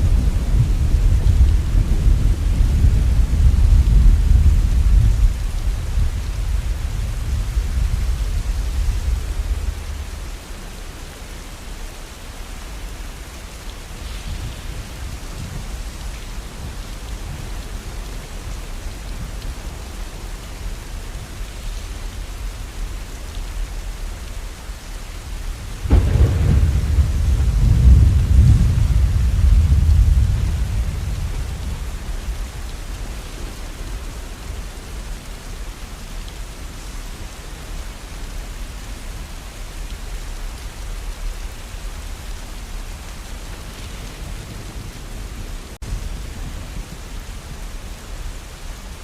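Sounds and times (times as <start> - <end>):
thunder rumbling: 0.0 - 10.4, 25.6 - 34.2
steady rain: 0.0 - 49.0
thunder peal: 25.8 - 32.4.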